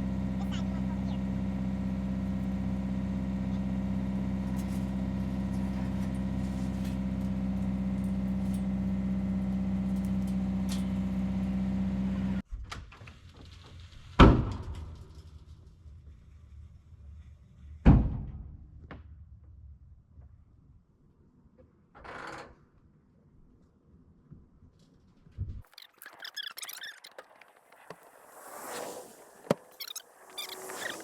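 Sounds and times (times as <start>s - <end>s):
vehicle engine idling: 0.0s - 12.4s.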